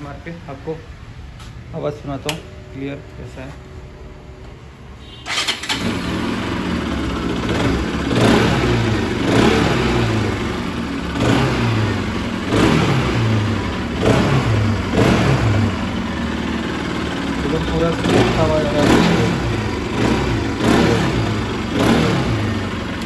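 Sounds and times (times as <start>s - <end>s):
motorcycle engine revving: 5.3s - 23.0s.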